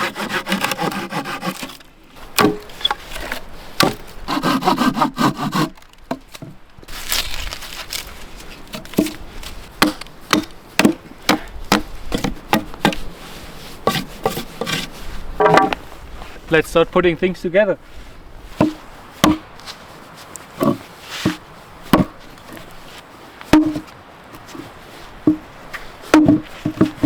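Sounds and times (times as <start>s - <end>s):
hand saw cutting log: 0.0s - 8.0s, 9.8s - 13.1s, 13.8s - 15.8s, 18.6s - 19.5s, 20.6s - 22.7s
sharp knocks on wood: 15.4s - 15.8s, 18.6s - 19.5s, 23.5s - 23.9s, 26.1s - 27.0s.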